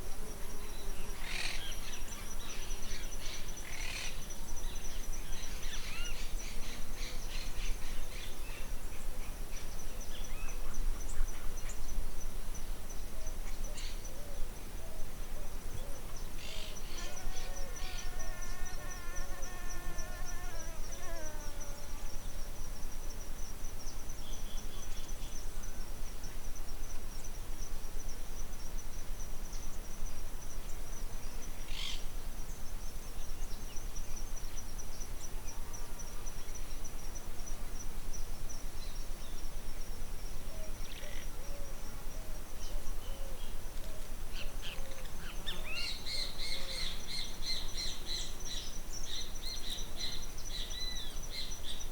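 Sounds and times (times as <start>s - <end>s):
insect chorus pulsing trill: 0.0s - 43.7s, 44.3s - 51.9s.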